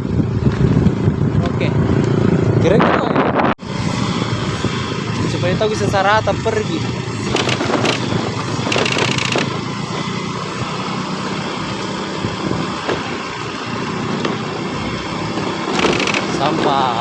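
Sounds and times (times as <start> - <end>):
road and wind noise: 0.0 - 17.0
vehicle engine running: 3.6 - 17.0.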